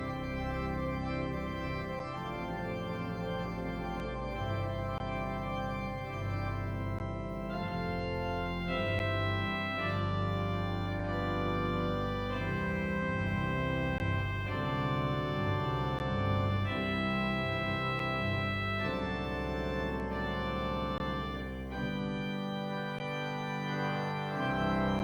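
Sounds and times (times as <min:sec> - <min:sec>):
church organ chords: 0:00.0 - 0:25.0.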